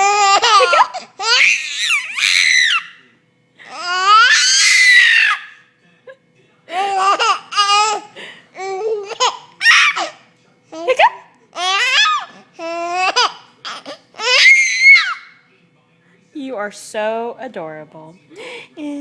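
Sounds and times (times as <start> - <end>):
baby laughing: 0.0 - 2.9, 3.6 - 5.4, 6.8 - 10.2, 11.6 - 15.2.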